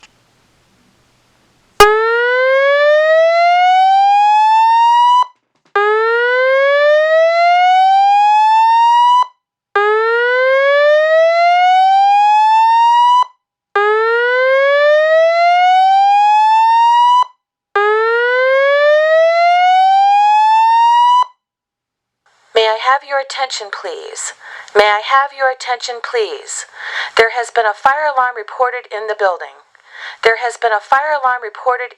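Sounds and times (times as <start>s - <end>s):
fire alarm whoop tone: 1.8s - 21.4s.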